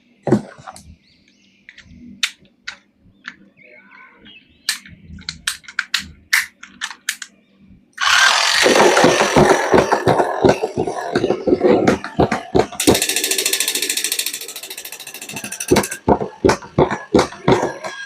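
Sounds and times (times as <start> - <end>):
plastic toys clicking: 4.7 - 7.4, 8.0 - 18.0
loud rough rattling: 8.0 - 18.0.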